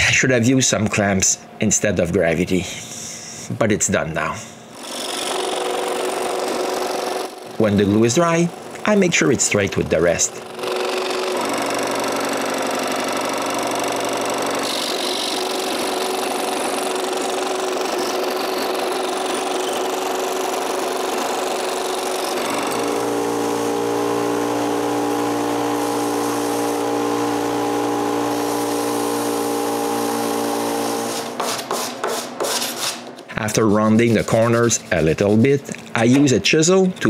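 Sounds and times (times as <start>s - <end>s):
power tool humming: 4.7s - 9.1s, 10.4s - 31.4s.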